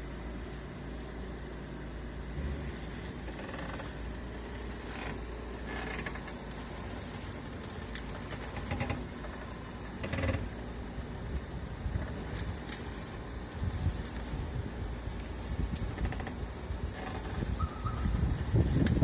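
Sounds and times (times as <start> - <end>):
low hum from car: 0.0 - 19.0
steering rack creaking: 2.4 - 10.6, 15.2 - 19.0.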